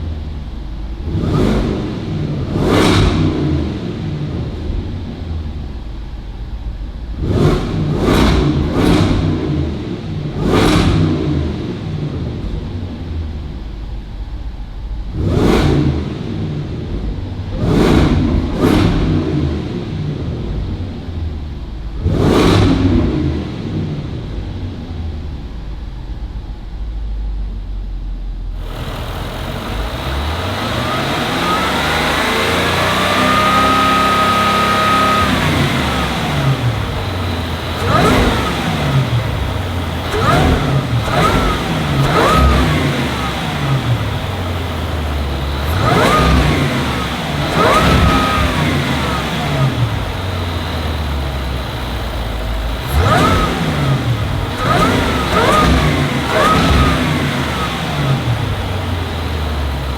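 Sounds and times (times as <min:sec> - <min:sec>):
engine revving through exhaust: 0:00.0 - 0:25.9, 0:28.5 - 0:59.9
sharp throttle blips: 0:28.6 - 0:59.9.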